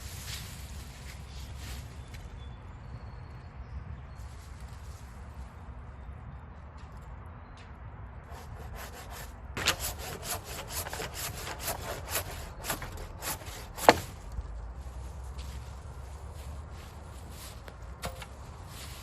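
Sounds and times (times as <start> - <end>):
hand saw cutting log: 8.3 - 14.2.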